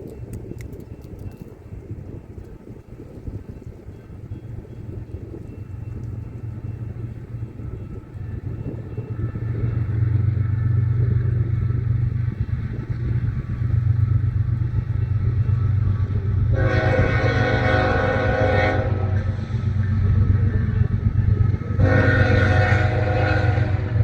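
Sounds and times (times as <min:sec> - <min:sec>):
low rumble: 0:00.0 - 0:24.0
loud multi-note horn: 0:16.5 - 0:19.3, 0:21.8 - 0:24.0.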